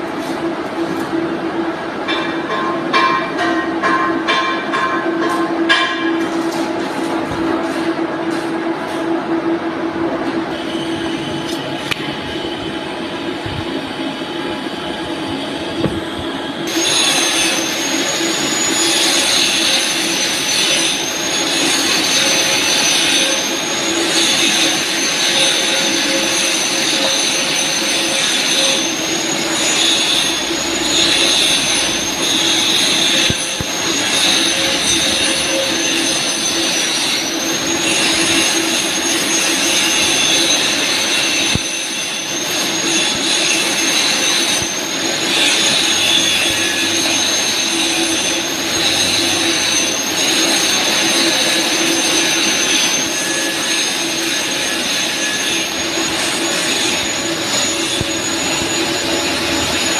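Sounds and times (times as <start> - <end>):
welding arc hissing: 16.7 - 59.9.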